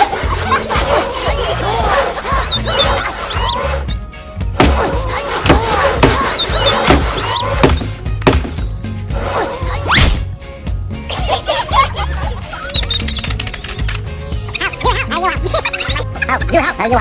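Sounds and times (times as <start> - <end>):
sharp whacks: 4.6 - 8.7.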